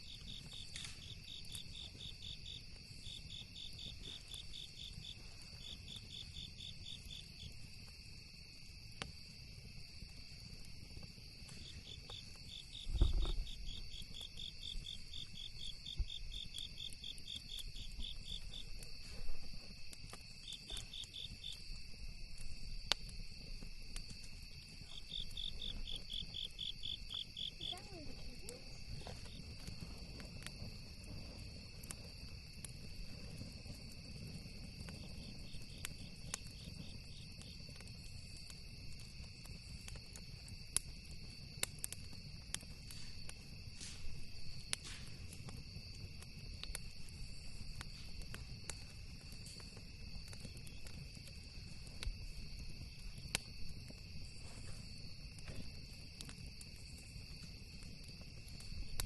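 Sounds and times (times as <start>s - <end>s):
campfire crackling: 0.0s - 59.0s
crickets chirping: 0.0s - 59.0s
dull thump: 12.8s - 13.5s.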